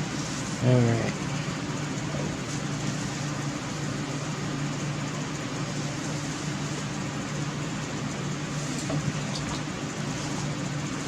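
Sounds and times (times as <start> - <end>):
machine hum with hiss: 0.0 - 11.0.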